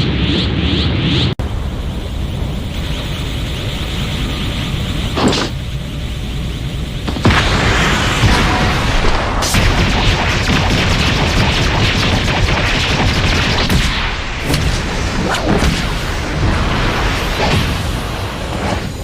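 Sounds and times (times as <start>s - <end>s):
sharp impacts: 0.0s - 19.0s
booms and explosions: 6.8s - 19.0s.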